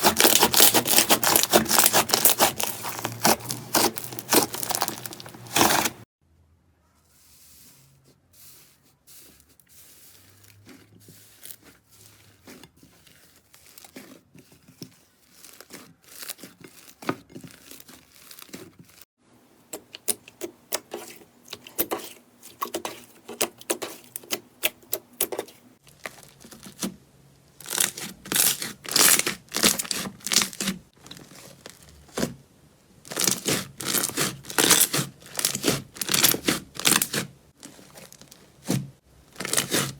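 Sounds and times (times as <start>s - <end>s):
slime crackling and popping: 0.0s - 6.0s, 27.6s - 32.2s.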